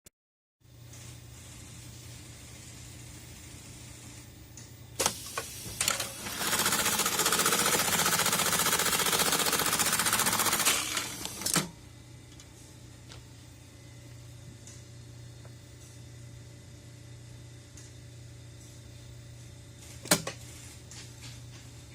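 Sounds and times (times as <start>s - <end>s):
sewing machine clacks: 5.9s - 11.6s
rapid machine stitching: 5.9s - 11.7s
sewing machine hum: 5.9s - 11.7s.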